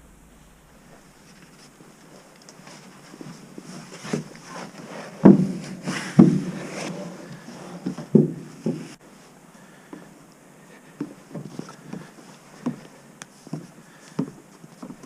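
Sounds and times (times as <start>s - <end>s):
heavy footsteps: 0.0s - 9.0s
rustling: 0.0s - 10.1s.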